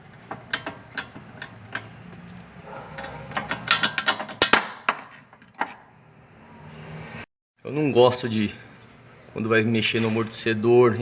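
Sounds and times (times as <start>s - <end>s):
hand tools clicking on steel: 0.4s - 4.6s.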